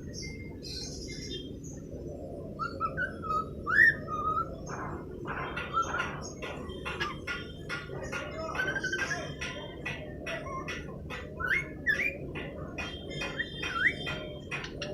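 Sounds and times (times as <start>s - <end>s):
cockatiel whistling and chirping: 2.6s - 4.5s, 13.2s - 14.2s.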